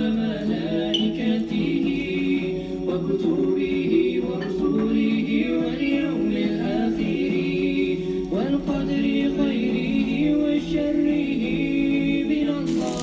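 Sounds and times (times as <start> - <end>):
a cappella devotional chanting: 0.0 - 13.0.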